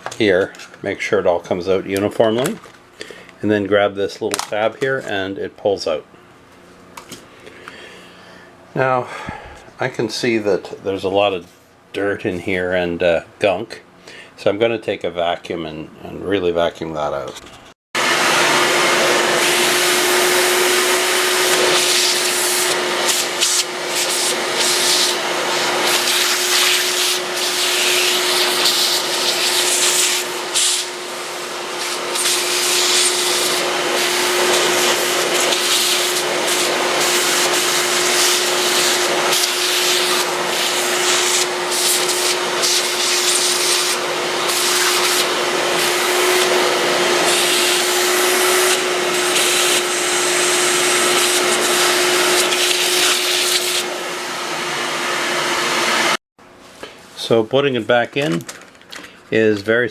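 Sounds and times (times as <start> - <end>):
vacuum cleaner running: 18.0 - 56.2.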